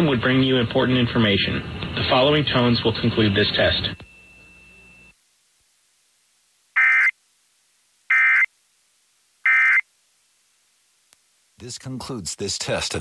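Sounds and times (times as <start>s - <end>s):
digital data tone bursts: 6.8s - 7.1s, 8.1s - 8.5s, 9.5s - 9.8s.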